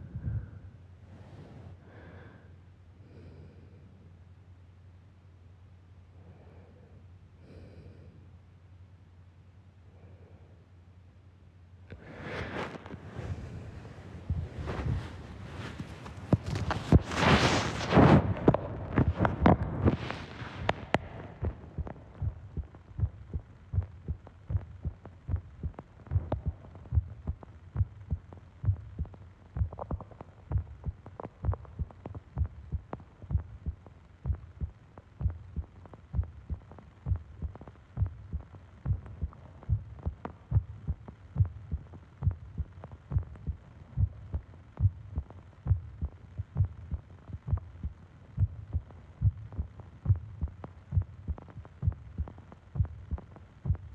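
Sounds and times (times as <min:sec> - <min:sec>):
human heartbeat: 0:00.0 - 0:00.8, 0:11.9 - 0:53.9.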